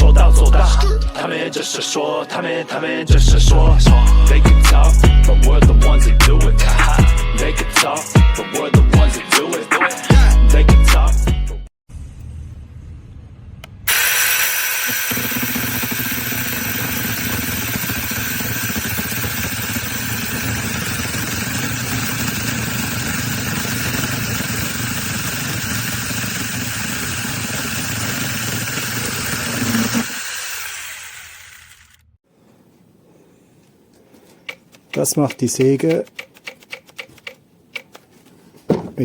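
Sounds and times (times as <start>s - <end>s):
mini chainsaw running: 13.9s - 32.2s.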